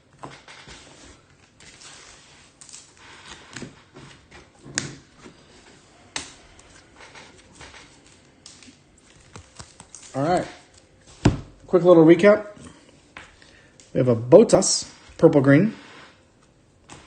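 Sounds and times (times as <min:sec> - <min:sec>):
trading cards rustling: 0:01.3 - 0:11.2.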